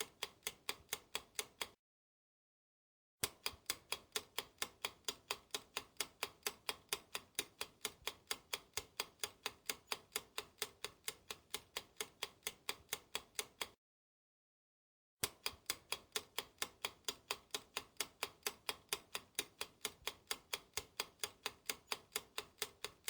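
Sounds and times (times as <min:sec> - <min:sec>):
clock ticking: 0:03.4 - 0:13.8, 0:15.3 - 0:23.0.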